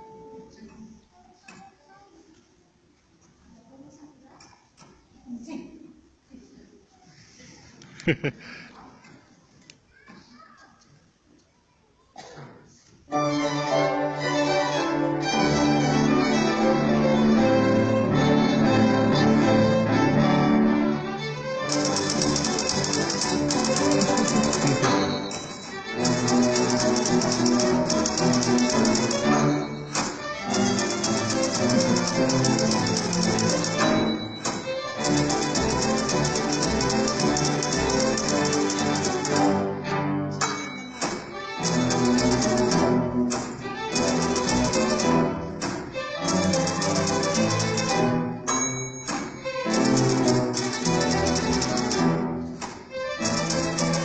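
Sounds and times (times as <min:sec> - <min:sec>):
string ensemble playing: 0:00.0 - 0:00.6, 0:13.1 - 0:54.0
typewriter key clatter: 0:21.7 - 0:39.5, 0:53.2 - 0:54.0.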